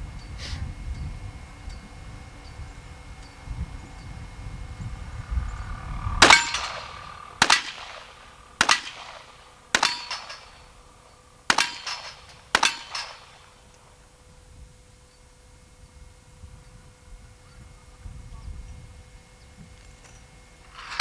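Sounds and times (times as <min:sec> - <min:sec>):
metallic ringing: 0:00.2 - 0:17.1
revolver shots: 0:06.2 - 0:13.6.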